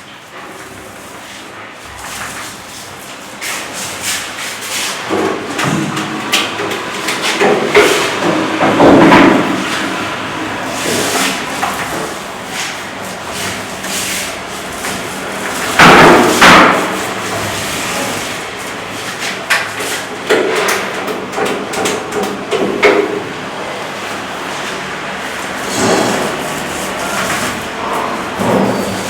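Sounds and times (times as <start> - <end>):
hammering on wood: 15.8 - 17.0.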